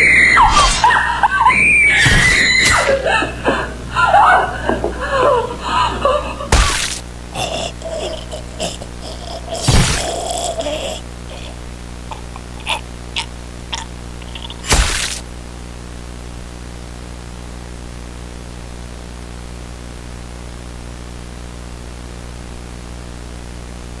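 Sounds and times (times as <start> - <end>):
low electrical hum: 0.0 - 24.0
static hiss: 5.5 - 24.0.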